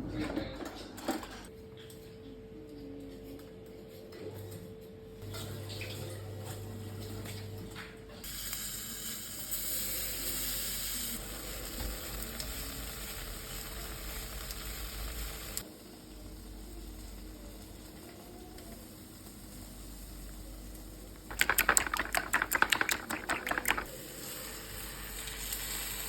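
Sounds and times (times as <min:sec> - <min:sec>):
food sizzling in a hot pan: 0:08.2 - 0:15.7, 0:23.7 - 0:26.0.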